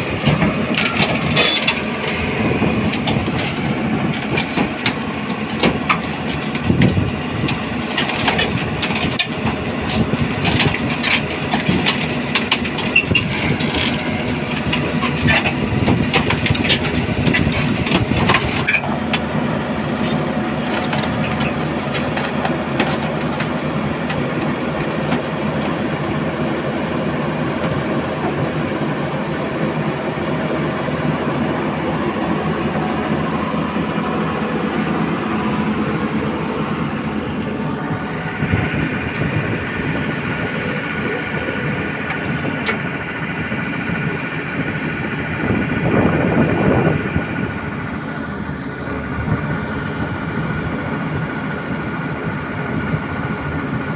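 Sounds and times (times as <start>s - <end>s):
machinery clanks and knocks: 0.0s - 26.2s, 30.8s - 53.9s
heavy machinery engine running: 0.0s - 53.9s.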